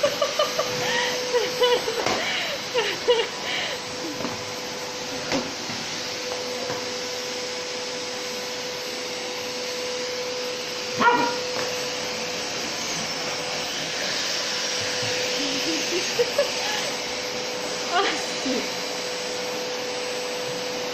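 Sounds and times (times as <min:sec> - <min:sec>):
vacuum cleaner humming: 0:00.0 - 0:20.9
dog barking: 0:11.0 - 0:11.4.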